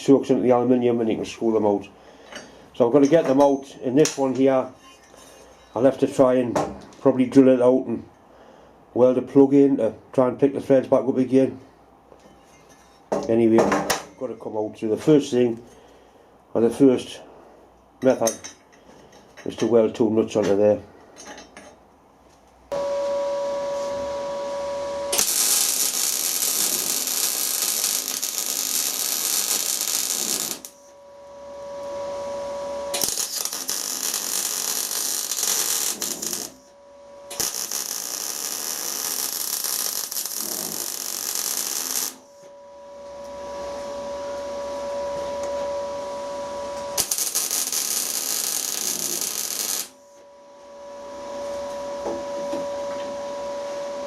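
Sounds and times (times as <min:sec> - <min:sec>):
welder arc crackling: 0:22.7 - 0:42.4, 0:44.1 - 0:50.1
steady whine: 0:22.7 - 0:54.0.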